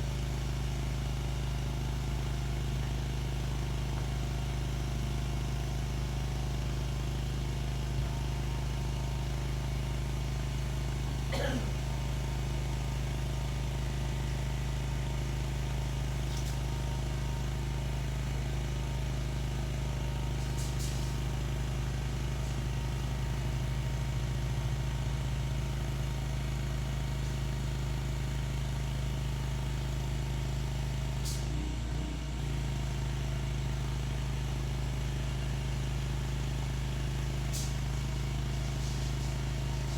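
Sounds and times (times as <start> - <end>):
pressure washer running: 0.0 - 30.5.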